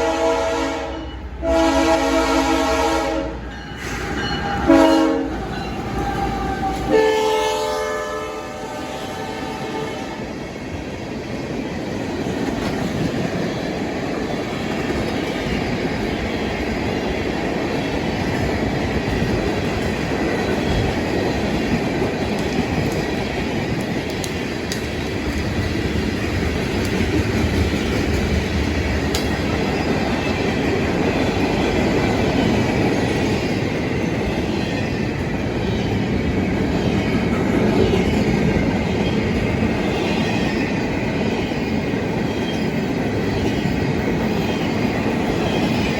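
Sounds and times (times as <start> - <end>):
steel wheels rumbling on rails: 0.0 - 45.9.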